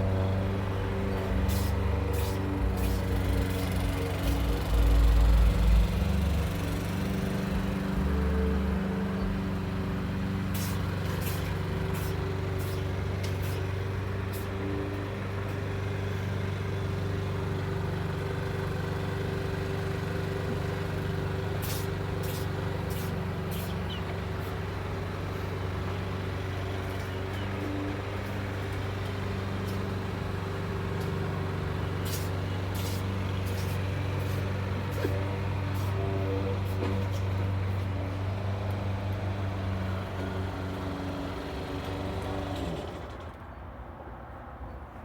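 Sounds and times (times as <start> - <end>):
lawn mower engine running: 0.0 - 43.4
cat sneezing: 34.9 - 35.2.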